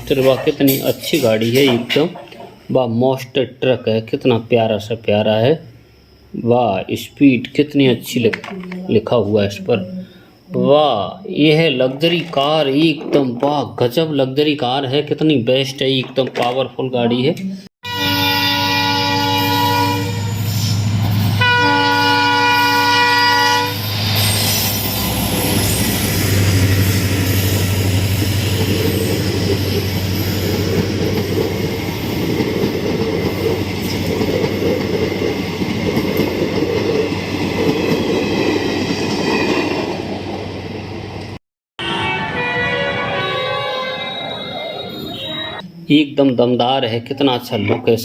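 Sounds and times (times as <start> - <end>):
train running along: 0.0 - 16.5, 17.9 - 45.7
train horn blasts: 17.8 - 20.6, 21.4 - 23.9, 41.8 - 44.4.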